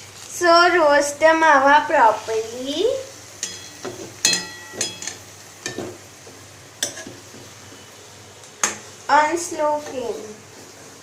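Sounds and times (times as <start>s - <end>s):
utensil scraping and clinking pan: 3.4s - 5.9s.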